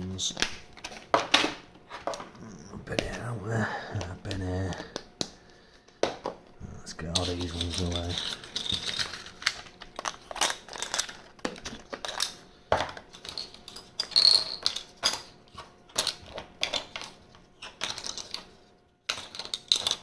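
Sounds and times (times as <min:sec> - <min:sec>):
plastic discs clicking and clattering: 0:00.3 - 0:03.3, 0:07.0 - 0:20.0.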